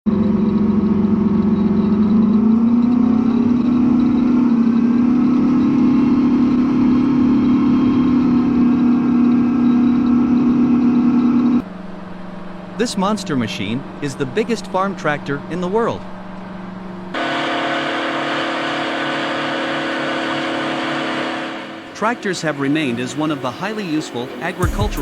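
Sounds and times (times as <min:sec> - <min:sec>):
tractor diesel engine under load: 0:00.0 - 0:20.4, 0:21.8 - 0:25.0.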